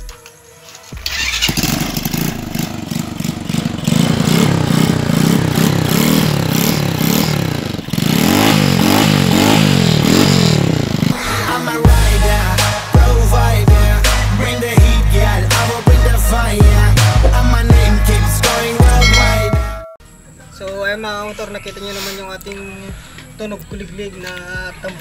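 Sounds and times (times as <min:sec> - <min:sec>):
motorcycle engine revving: 0:01.0 - 0:19.9.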